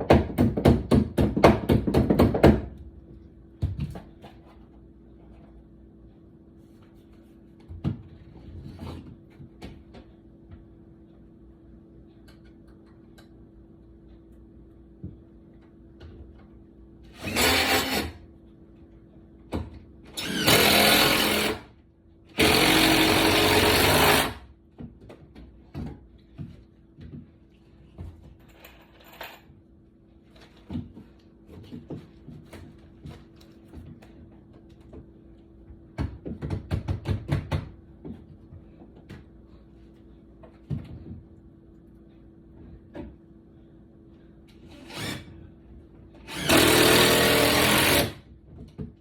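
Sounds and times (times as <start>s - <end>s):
hand work knocks: 0.0s - 2.7s, 36.0s - 37.8s
power tool running: 17.2s - 18.2s, 20.2s - 21.7s, 22.4s - 24.4s, 46.3s - 48.2s.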